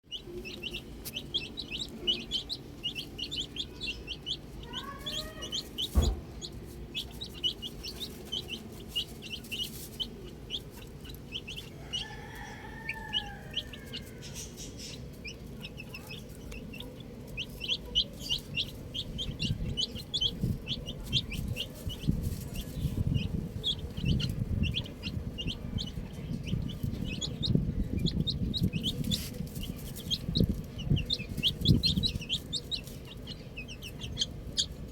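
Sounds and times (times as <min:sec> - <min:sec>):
chicks peeping: 0:00.0 - 0:34.9
low rumbling noise: 0:00.1 - 0:34.9
single knock: 0:05.9 - 0:06.4.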